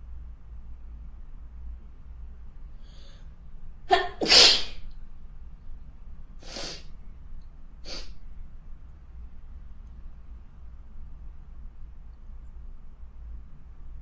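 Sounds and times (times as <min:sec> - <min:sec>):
person sneezing: 0:03.9 - 0:04.8, 0:06.4 - 0:06.8, 0:07.9 - 0:08.1.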